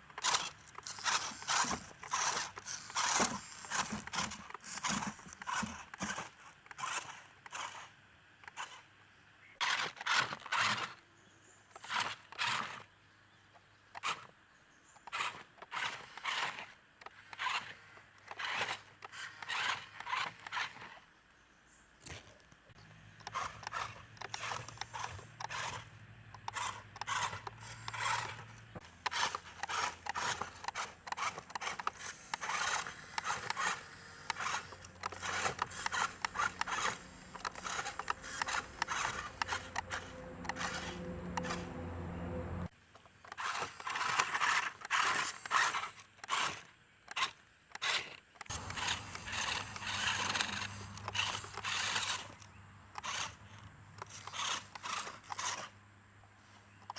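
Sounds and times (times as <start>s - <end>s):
wheels grinding on ground: 0.0s - 8.8s, 9.6s - 56.9s
electric motor hum: 22.8s - 42.7s, 48.5s - 55.8s.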